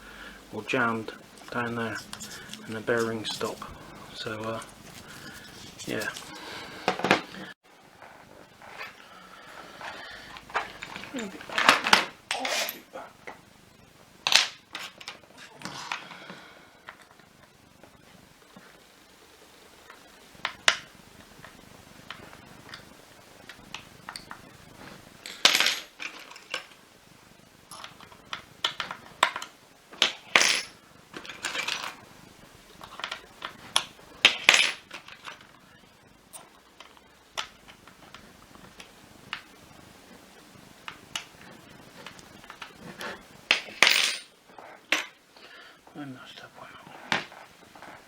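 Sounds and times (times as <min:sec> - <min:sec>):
tools and small parts clinking: 0:10.4 - 0:12.9, 0:25.2 - 0:26.8, 0:27.7 - 0:32.0, 0:32.8 - 0:35.5, 0:42.0 - 0:45.2.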